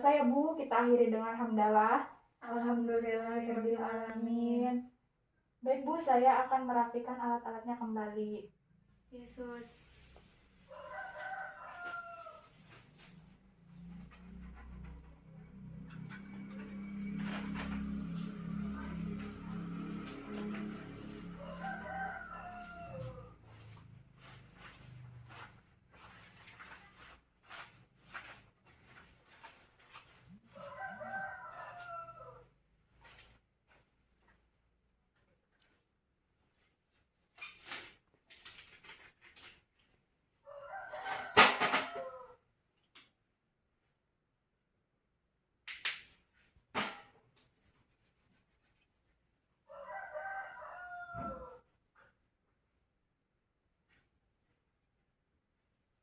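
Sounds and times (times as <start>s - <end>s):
rooster crowing: 10.7s - 12.7s, 15.8s - 23.8s, 30.5s - 32.5s, 40.4s - 42.4s, 49.7s - 51.7s.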